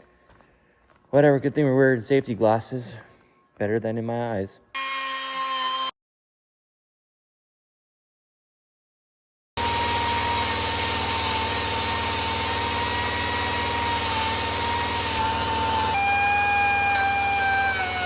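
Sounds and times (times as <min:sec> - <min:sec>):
motor running with high whine: 0:09.6 - 0:18.0.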